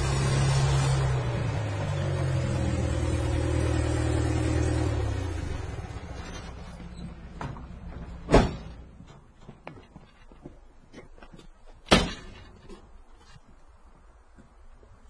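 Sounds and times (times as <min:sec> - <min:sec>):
vehicle engine rumble: 0:00.0 - 0:15.0
door slamming shut: 0:08.2 - 0:08.9, 0:11.9 - 0:12.4.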